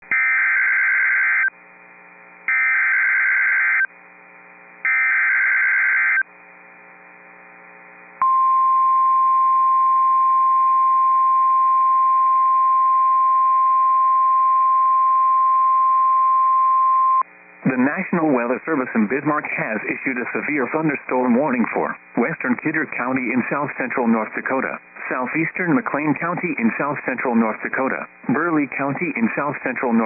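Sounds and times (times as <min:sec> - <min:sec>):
steady single-pitch attention tone: 0:08.2 - 0:17.2.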